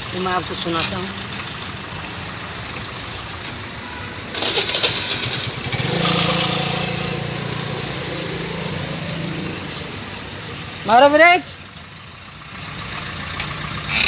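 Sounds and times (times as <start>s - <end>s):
rapid rattling clatter: 4.3s - 7.2s
car engine running: 4.3s - 14.0s.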